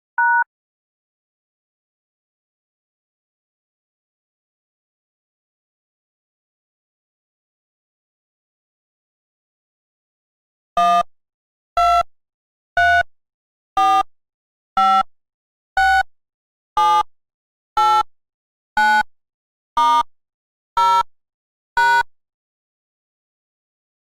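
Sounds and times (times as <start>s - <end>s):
short electronic beeps: 0.2s - 0.5s.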